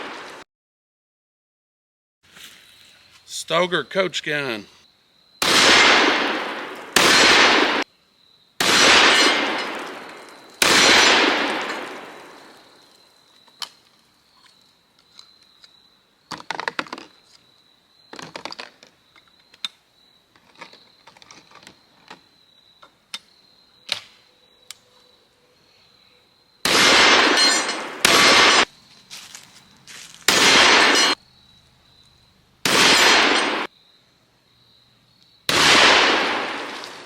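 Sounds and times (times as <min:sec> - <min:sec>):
shotgun shots echoing: 0:00.0 - 0:00.4, 0:05.4 - 0:07.8, 0:08.6 - 0:12.6, 0:26.6 - 0:28.7, 0:30.3 - 0:31.2, 0:32.6 - 0:33.7, 0:35.5 - 0:37.0.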